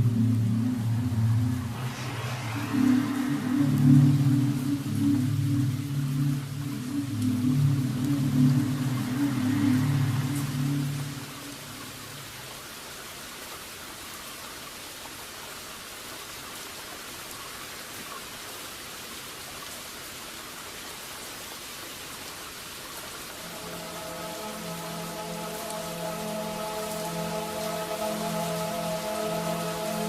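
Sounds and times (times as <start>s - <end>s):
steady rain falling: 0.0s - 30.0s
soft held music tones: 23.4s - 30.0s.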